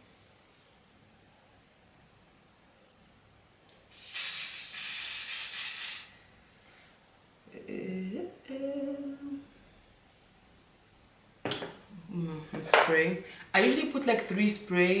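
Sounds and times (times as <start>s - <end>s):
hair spray hissing: 3.9s - 6.2s.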